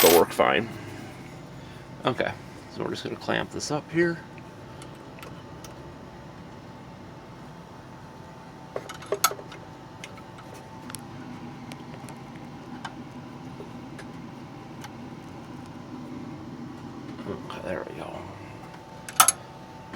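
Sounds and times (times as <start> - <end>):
faint hum: 10.6 - 19.9.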